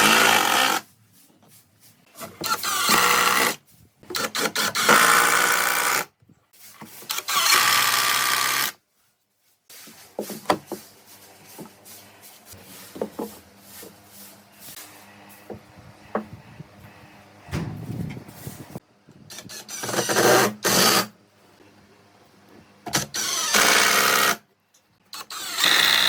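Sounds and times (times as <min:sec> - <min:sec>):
power tool running: 0:00.0 - 0:00.8, 0:02.4 - 0:03.6, 0:25.2 - 0:26.0.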